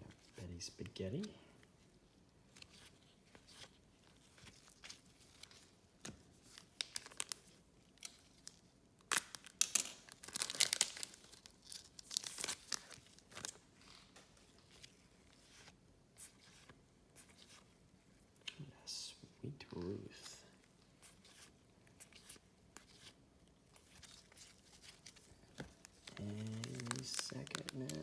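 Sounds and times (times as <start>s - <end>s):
wrapper crinkling: 6.4s - 15.0s, 23.7s - 28.0s.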